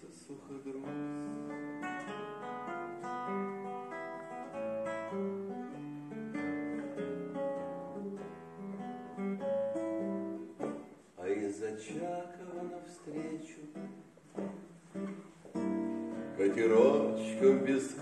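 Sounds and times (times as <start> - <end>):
acoustic guitar playing: 0.0 - 18.0
person singing: 11.2 - 14.0, 16.1 - 18.0.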